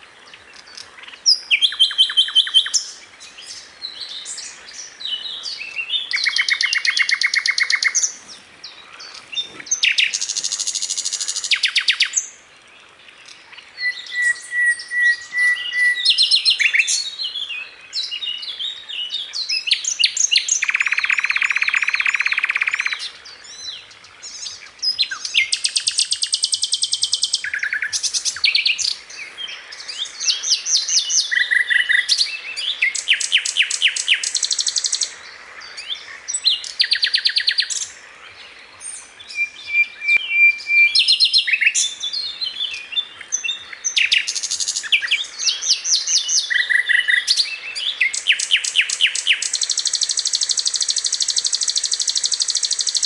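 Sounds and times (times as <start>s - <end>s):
bird song trills and chirps: 0.0s - 53.0s
whistled bird notes: 13.8s - 35.1s, 38.8s - 53.0s.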